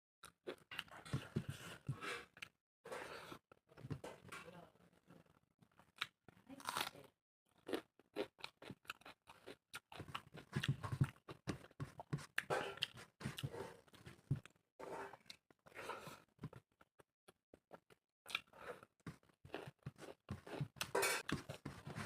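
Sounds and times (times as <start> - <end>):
person chewing and crunching food: 0.2 - 2.6, 7.5 - 22.0.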